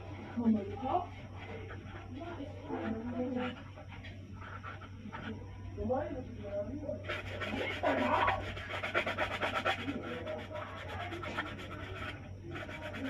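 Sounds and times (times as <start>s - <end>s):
low electrical hum: 0.0s - 13.0s
scratchy scraping strokes: 7.0s - 13.0s.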